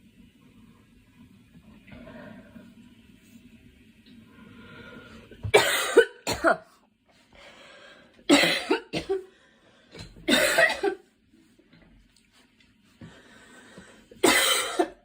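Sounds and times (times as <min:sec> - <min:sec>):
girl coughing: 0:05.5 - 0:06.7, 0:08.3 - 0:09.3, 0:10.3 - 0:11.0, 0:14.2 - 0:15.0.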